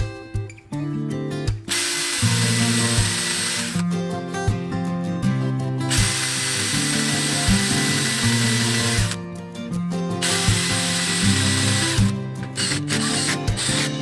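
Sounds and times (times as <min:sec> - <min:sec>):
background music: 0:00.0 - 0:14.0
power tool motor whining: 0:01.7 - 0:03.8, 0:05.9 - 0:09.2, 0:10.2 - 0:14.0.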